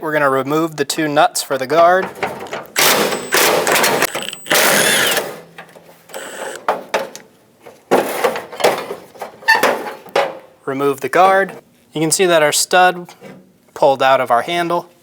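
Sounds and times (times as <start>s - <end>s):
ratchet wrench ratcheting: 2.8s - 5.2s.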